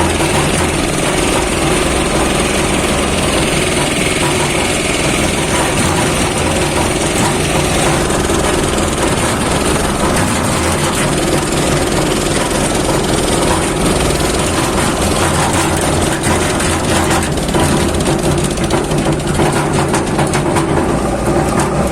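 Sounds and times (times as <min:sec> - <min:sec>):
diesel engine running: 0:00.0 - 0:21.9
mechanical rattle: 0:00.0 - 0:21.9.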